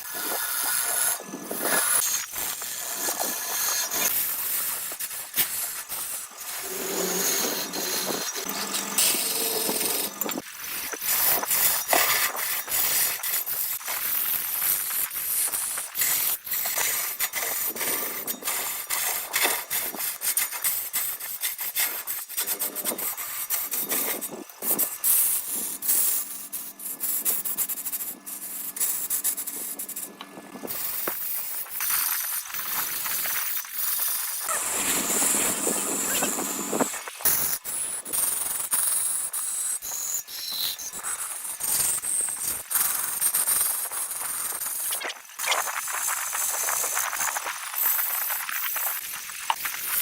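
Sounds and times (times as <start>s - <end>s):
lathe tool scraping spinning wood: 0.0s - 38.3s.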